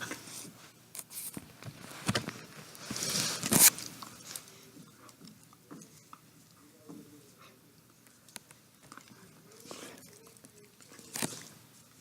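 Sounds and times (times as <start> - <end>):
rustling: 0.1 - 4.7.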